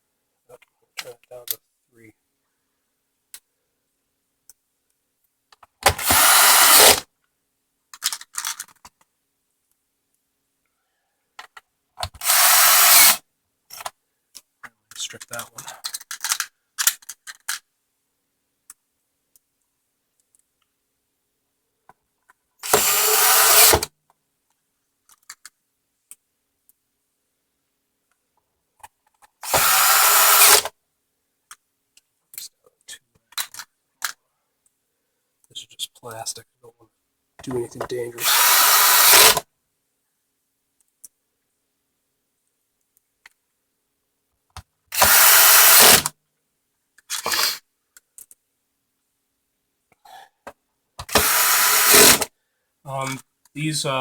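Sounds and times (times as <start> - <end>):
cordless drill driving screws: 5.9 - 7.0, 12.0 - 13.2, 22.6 - 23.9, 29.4 - 30.7, 38.2 - 39.4, 44.9 - 46.1, 51.0 - 52.3.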